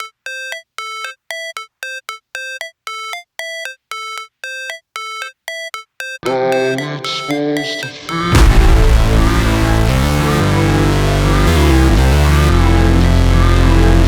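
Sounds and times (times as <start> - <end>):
electronic backing track with bass: 6.2 - 14.0
short synth notes: 8.2 - 14.0.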